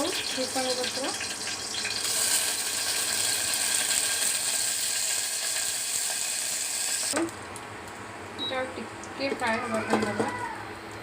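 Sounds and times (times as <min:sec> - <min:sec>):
spices spluttering in hot oil: 0:00.0 - 0:07.3.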